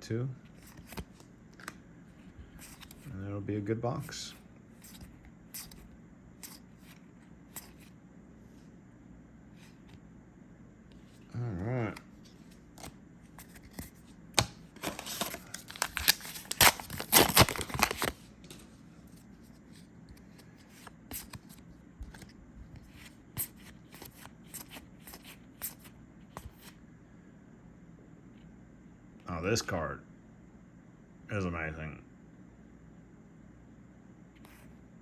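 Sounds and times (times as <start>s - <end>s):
foil pack tearing and crinkling: 14.4s - 18.2s.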